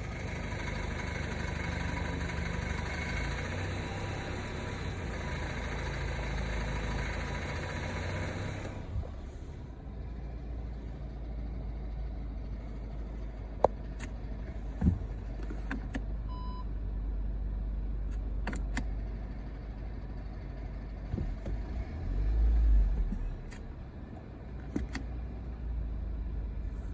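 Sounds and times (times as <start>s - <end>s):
car engine droning: 0.0s - 26.9s
short beep: 16.3s - 16.7s.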